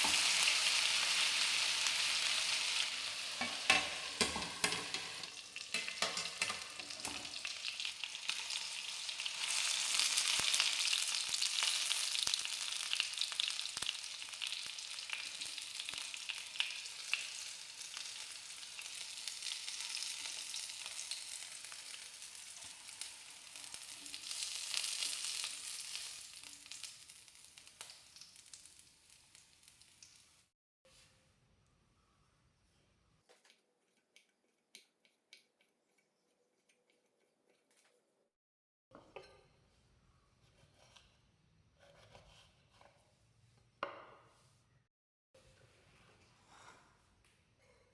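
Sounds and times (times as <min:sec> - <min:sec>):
chicken sizzling in oil: 0:00.0 - 0:30.5
stirring clicks: 0:33.3 - 0:38.1.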